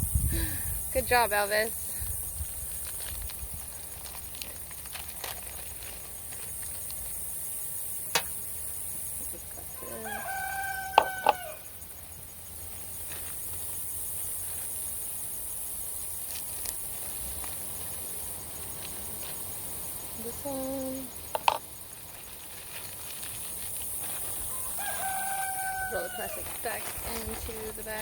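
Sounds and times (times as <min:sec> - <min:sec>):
rooster crowing: 0:09.7 - 0:11.7, 0:24.4 - 0:26.8.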